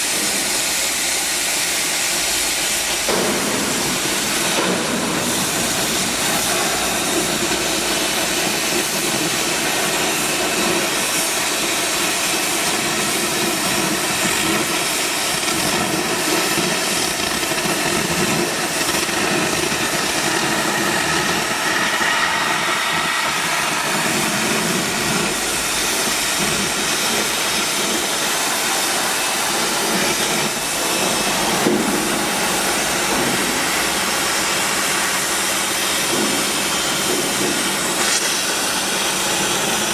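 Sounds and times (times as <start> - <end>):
cutting torch hissing: 0.0 - 39.9.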